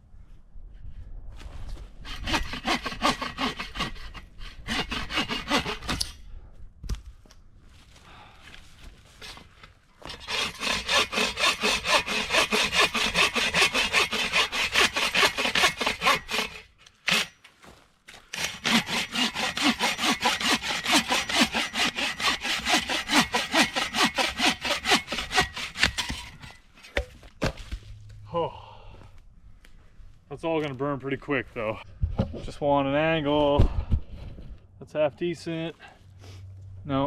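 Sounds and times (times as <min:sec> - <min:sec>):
hand saw cutting wood: 0:02.0 - 0:06.2, 0:10.0 - 0:17.5, 0:18.2 - 0:27.1.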